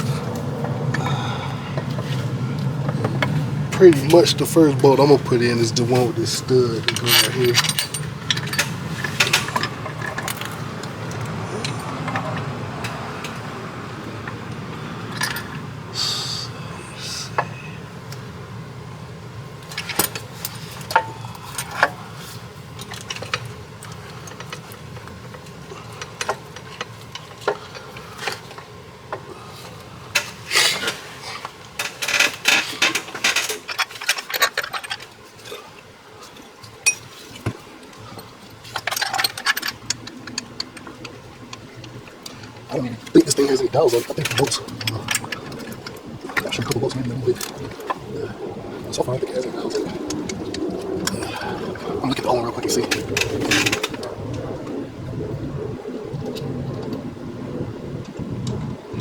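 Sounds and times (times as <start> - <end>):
metallic clinks of bolts and tools: 6.0 - 10.6.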